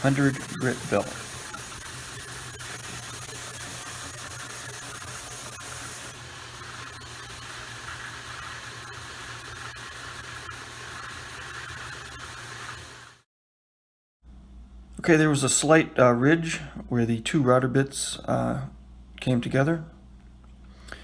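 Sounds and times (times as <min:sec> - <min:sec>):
belt sander sanding wood: 0:00.0 - 0:13.2.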